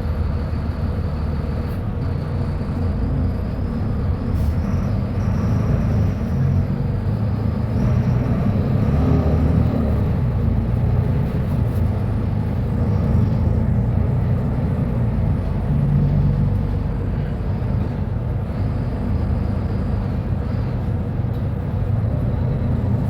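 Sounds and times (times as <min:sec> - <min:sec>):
diesel bus engine rumbling: 0:00.0 - 0:23.0.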